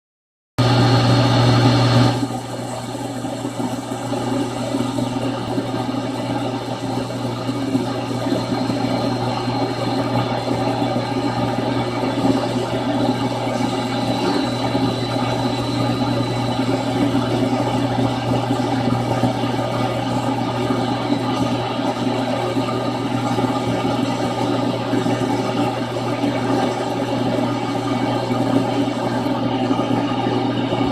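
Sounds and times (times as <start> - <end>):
radio static hiss: 13.6 - 15.9.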